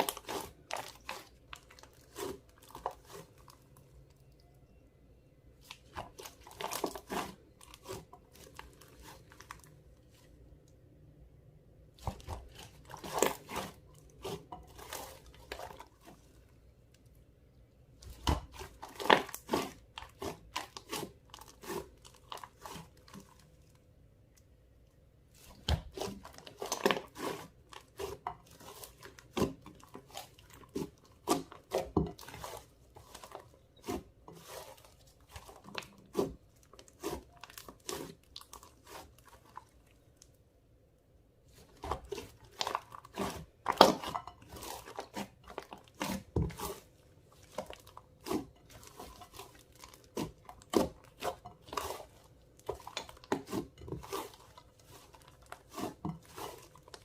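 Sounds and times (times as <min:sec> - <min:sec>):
slime squishing with sticky clicks: 0:11.8 - 0:40.4, 0:41.5 - 0:57.0.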